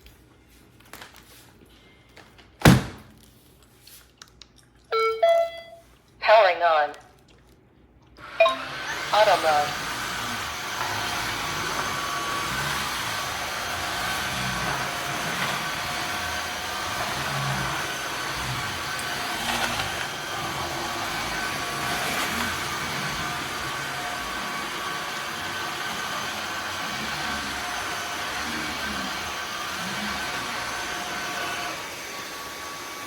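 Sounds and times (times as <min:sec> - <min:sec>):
floor vacuum running: 0:08.2 - 0:33.0.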